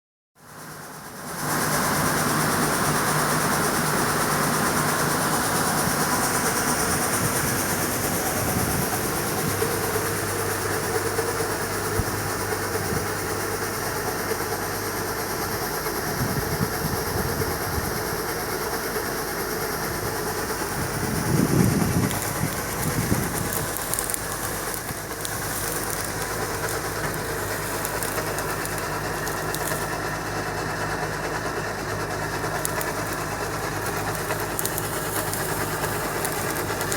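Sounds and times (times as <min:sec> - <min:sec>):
combine harvester droning: 0:00.4 - 0:36.9.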